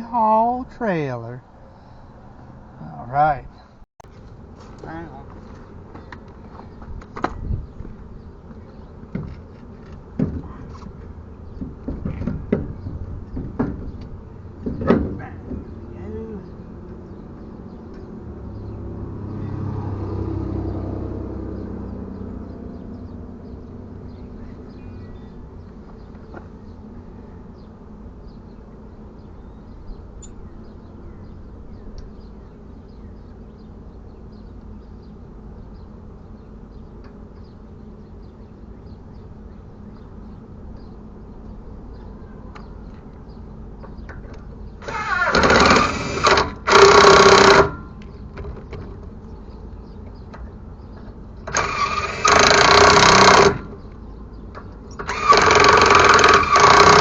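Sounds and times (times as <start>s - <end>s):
power tool bursts: 44.8s - 47.8s, 51.5s - 53.8s, 55.0s - 57.0s.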